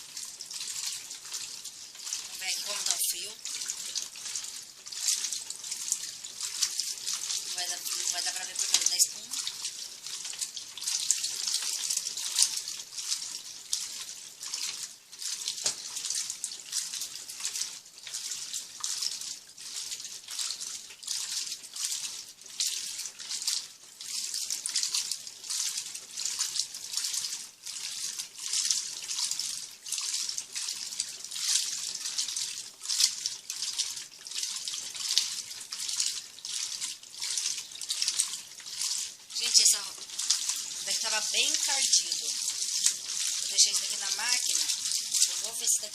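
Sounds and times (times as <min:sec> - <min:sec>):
washing machine water sloshing: 0:00.0 - 0:45.9.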